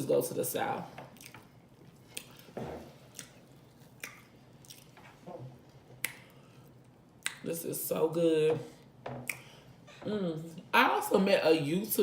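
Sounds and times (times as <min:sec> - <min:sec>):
lip smacks: 0:01.0 - 0:05.2, 0:05.9 - 0:07.5, 0:09.2 - 0:09.7
person chewing: 0:01.0 - 0:07.4.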